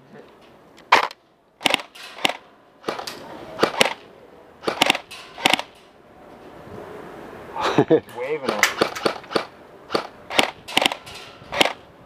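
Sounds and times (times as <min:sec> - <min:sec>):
airsoft guns snapping shots: 0:00.8 - 0:05.8, 0:08.4 - 0:11.8.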